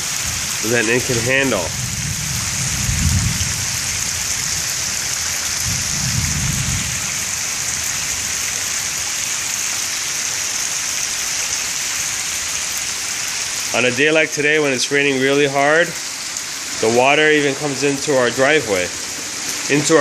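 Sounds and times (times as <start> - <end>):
heavy rain on pavement: 0.0 - 20.0
low rumbles: 0.2 - 7.3.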